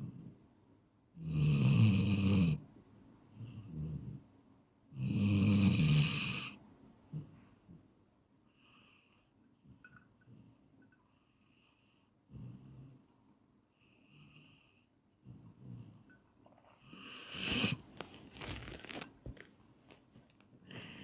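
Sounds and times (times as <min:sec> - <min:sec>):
person snoring: 0:05.0 - 0:06.6, 0:16.8 - 0:17.8.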